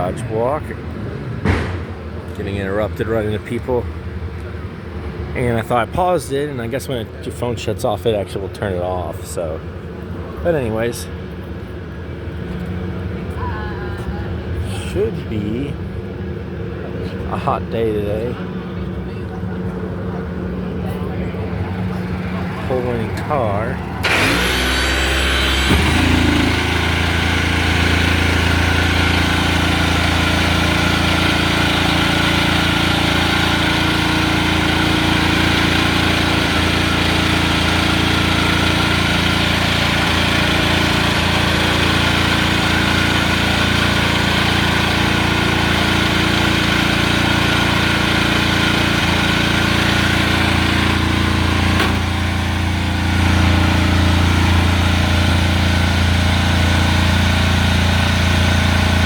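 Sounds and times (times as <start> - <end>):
engine idling: 17.8 - 59.0.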